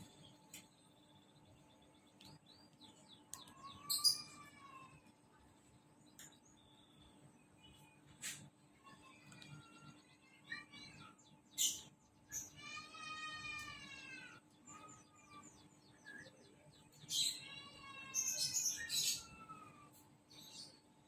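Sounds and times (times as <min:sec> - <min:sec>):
bird chirping and trilling: 0:00.0 - 0:04.9, 0:10.6 - 0:13.1, 0:13.7 - 0:20.9.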